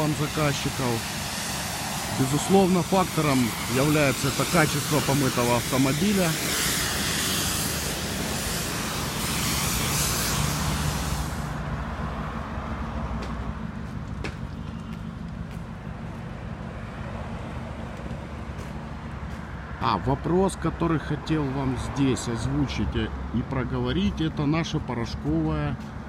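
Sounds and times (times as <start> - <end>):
high-pressure water spraying: 0.0 - 11.7.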